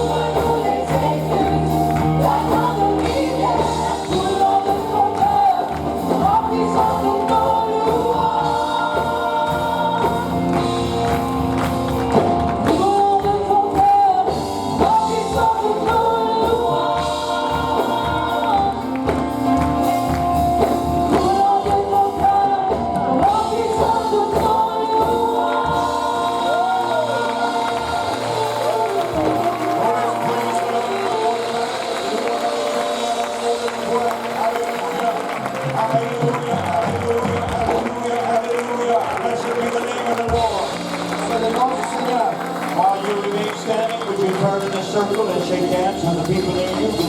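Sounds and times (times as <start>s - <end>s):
instrumental accompaniment: 0.0s - 47.0s
voices singing gospel song: 0.0s - 47.0s.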